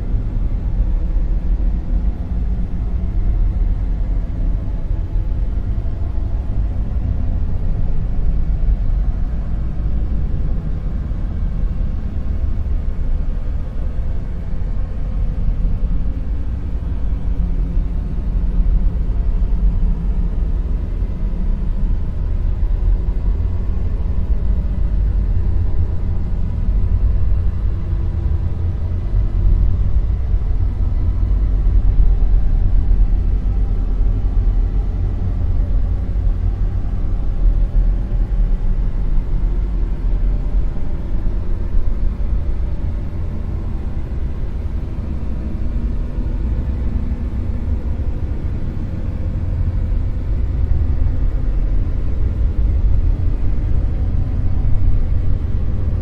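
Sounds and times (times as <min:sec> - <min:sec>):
deep rumbling noise: 0:00.0 - 0:56.0.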